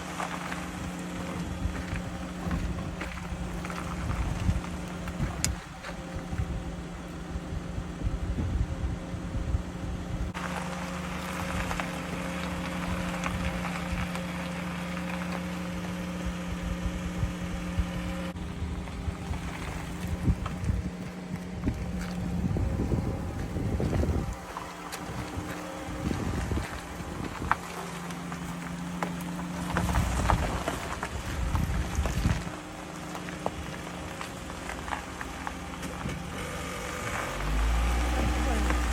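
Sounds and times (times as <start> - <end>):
engine and road hum: 0.0 - 38.9
wind buffeting microphone: 0.7 - 10.4, 15.7 - 32.8.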